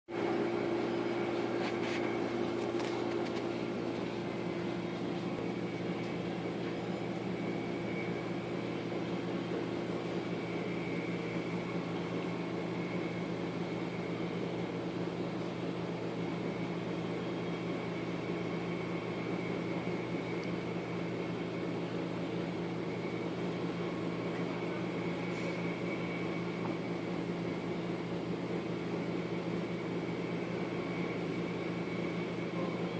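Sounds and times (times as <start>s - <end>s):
faint high whine: 0.1s - 32.9s
steady mechanical hum: 0.1s - 32.9s.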